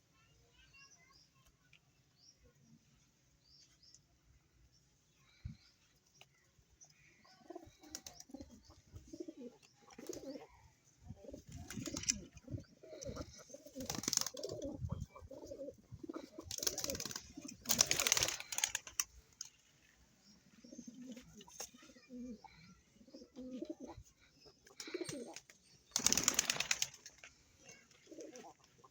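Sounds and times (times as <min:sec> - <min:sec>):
pigeons cooing: 0:07.2 - 0:19.1, 0:20.5 - 0:26.8, 0:28.0 - 0:28.9
rustling bursts: 0:16.5 - 0:19.6.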